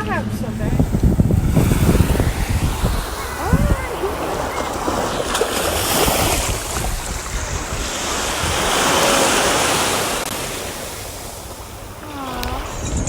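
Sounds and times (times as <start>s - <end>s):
ocean surf washing ashore: 0.0s - 13.0s
wind rumbling on microphone: 0.0s - 13.0s.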